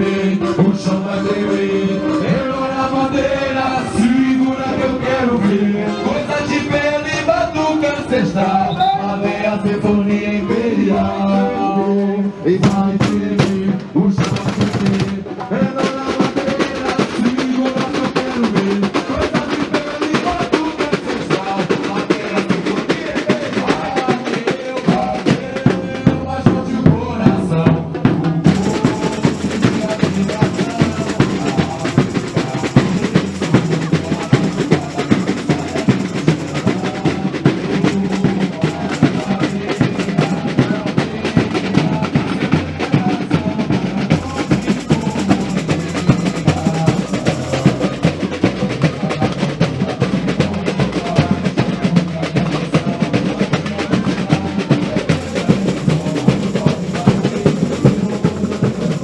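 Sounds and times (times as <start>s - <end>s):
samba drumming: 12.5s - 59.0s
bass drums: 12.6s - 15.5s, 28.4s - 42.4s, 43.0s - 49.0s, 55.1s - 59.0s
snare drums rattling: 12.6s - 21.0s, 28.5s - 42.0s, 44.0s - 48.7s, 55.0s - 59.0s.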